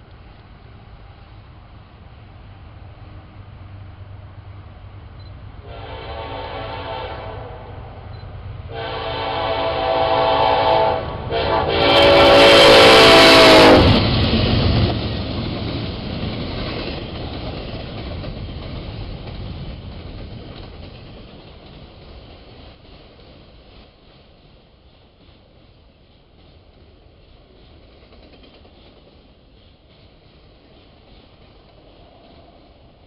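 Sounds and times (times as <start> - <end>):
train rumbling by: 0.0 - 33.0
locomotive air horn blasts: 5.6 - 8.0, 8.7 - 14.0.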